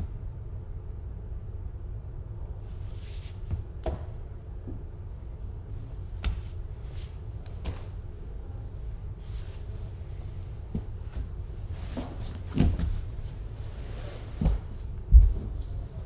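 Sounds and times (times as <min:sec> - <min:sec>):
heavy thumps: 0:14.2 - 0:15.8.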